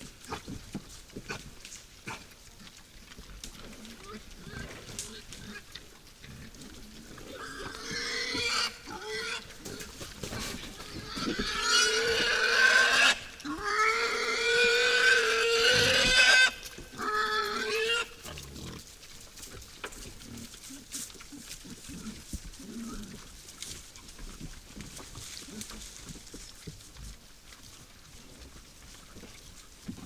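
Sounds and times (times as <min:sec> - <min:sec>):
wild boars squealing: 0:07.3 - 0:09.8, 0:10.4 - 0:18.8.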